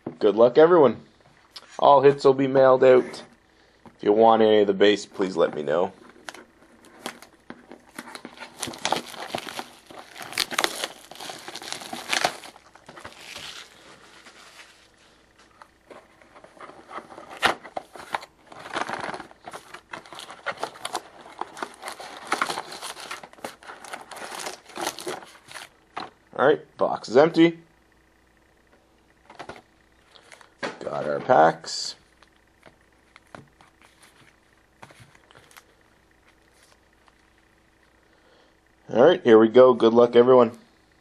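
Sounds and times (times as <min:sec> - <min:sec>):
card packs crinkling and tearing: 0:05.2 - 0:26.1, 0:32.2 - 0:37.0.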